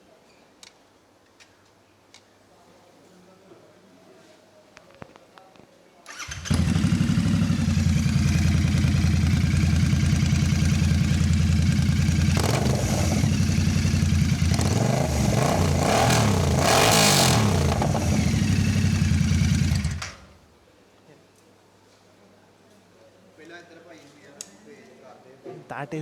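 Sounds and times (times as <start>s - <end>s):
motorcycle engine idling and revving: 6.2s - 20.4s.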